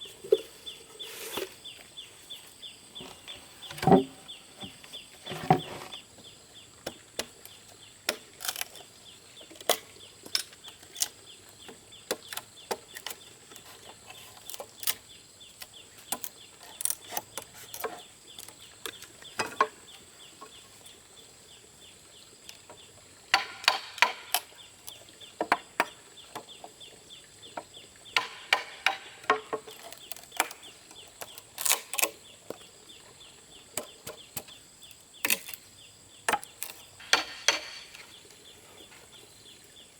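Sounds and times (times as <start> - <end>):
sharp taps and knocks: 23.3 - 24.5, 27.5 - 30.6, 36.3 - 38.2.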